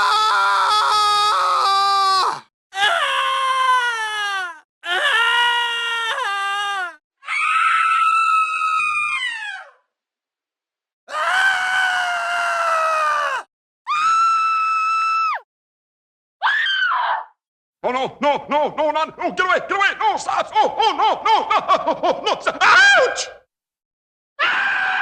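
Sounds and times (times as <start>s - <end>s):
high-pitched voice screaming: 22.2s - 23.4s.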